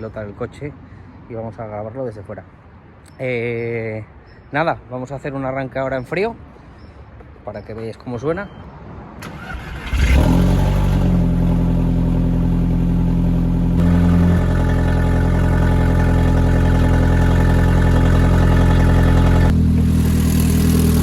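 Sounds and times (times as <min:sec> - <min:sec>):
car engine starting and idling: 0:09.2 - 0:21.0.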